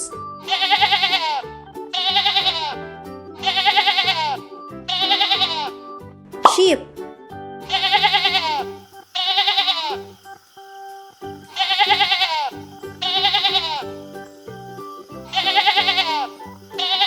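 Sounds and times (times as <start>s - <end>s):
light background music: 0.0s - 17.0s
sheep bleating: 0.4s - 5.8s, 7.6s - 10.2s, 11.5s - 14.0s, 15.1s - 17.0s.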